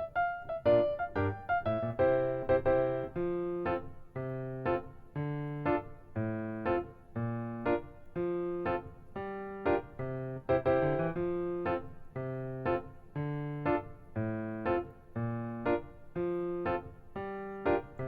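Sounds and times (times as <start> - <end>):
gentle piano chords: 0.0 - 18.0.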